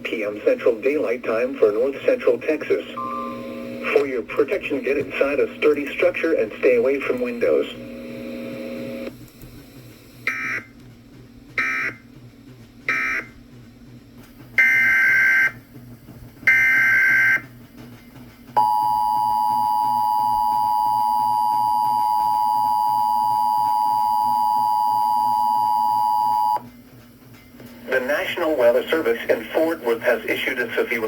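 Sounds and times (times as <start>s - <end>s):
two-tone attention tone: 3.0s - 3.7s, 18.6s - 26.6s.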